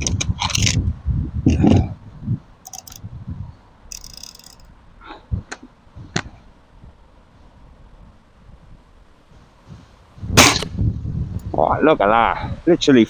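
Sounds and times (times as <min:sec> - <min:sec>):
air rifle clicks: 0:02.7 - 0:03.0, 0:03.9 - 0:04.7.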